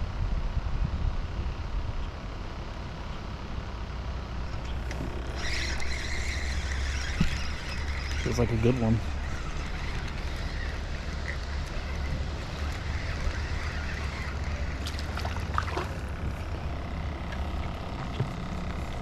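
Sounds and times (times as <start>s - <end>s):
wind rumble on microphone: 0.0s - 3.0s.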